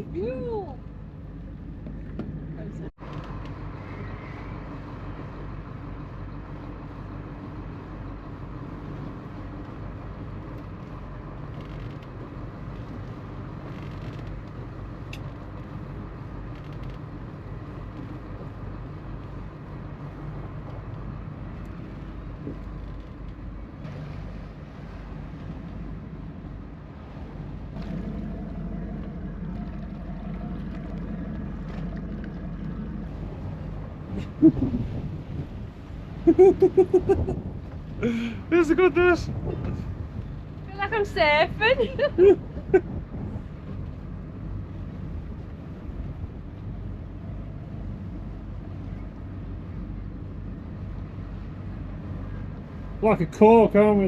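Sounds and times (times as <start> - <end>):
boat engine running: 0.0 - 54.0.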